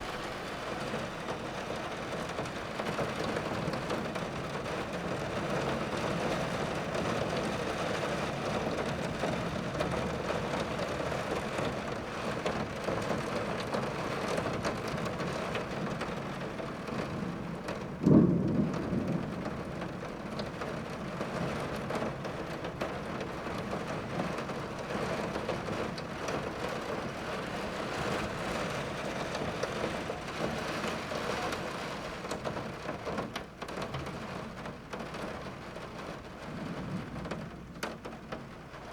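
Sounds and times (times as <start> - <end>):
thunderclap: 0.0 - 25.8
heavy rain on a tin roof: 0.0 - 38.9.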